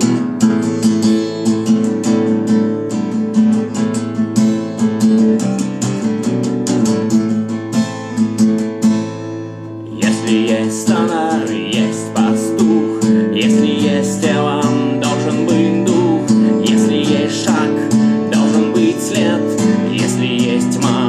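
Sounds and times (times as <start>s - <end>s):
acoustic guitar strumming: 0.0s - 21.0s.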